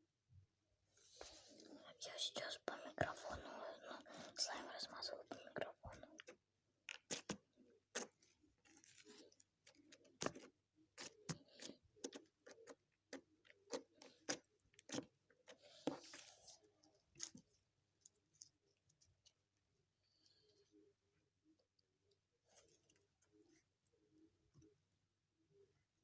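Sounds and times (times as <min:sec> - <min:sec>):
slime squelch: 0:03.0 - 0:19.3.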